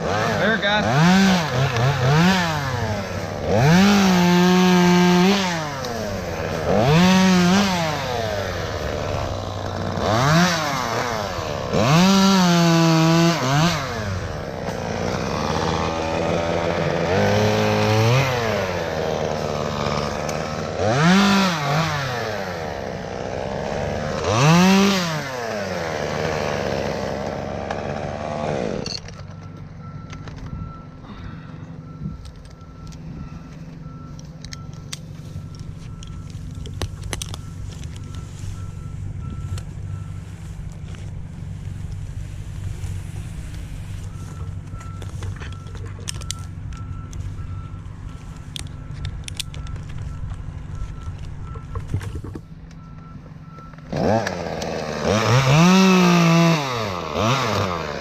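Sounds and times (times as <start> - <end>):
chainsaw revving: 0.0 - 29.1, 53.8 - 58.0.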